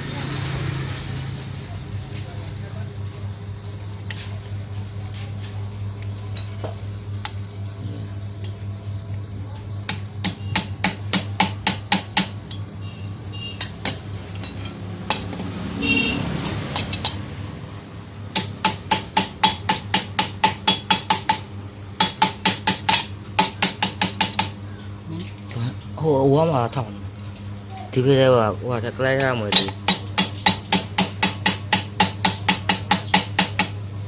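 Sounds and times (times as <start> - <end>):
steady low hum: 0.0 - 34.0
hammer striking metal: 9.9 - 12.7, 13.6 - 17.2, 18.3 - 24.6, 29.2 - 33.8.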